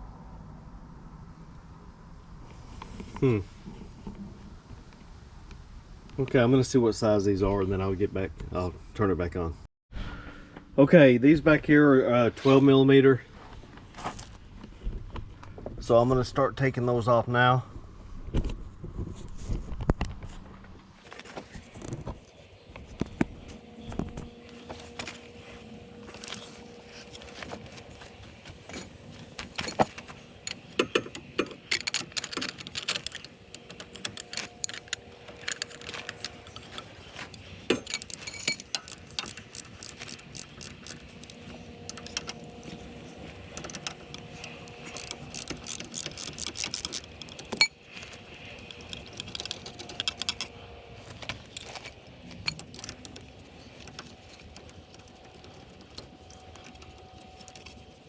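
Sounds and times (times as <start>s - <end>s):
socket ratchet clicking: 25.0s - 57.8s
metal tool clinks: 28.7s - 42.8s, 43.6s - 50.6s.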